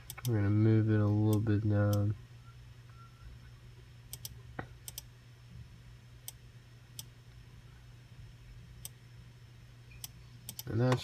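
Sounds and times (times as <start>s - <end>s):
low steady hum: 0.0s - 11.0s
computer mouse clicking: 10.0s - 10.7s.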